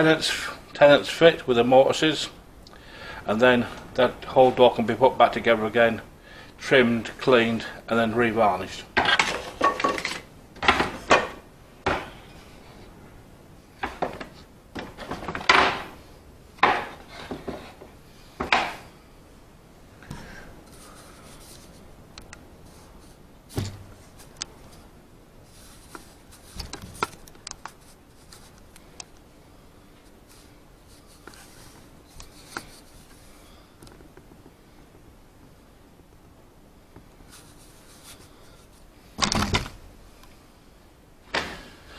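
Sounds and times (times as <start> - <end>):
scraping rubs: 20.7 - 21.9, 25.5 - 27.0, 30.2 - 33.3, 37.3 - 38.9
knocks on wood: 23.6 - 23.9.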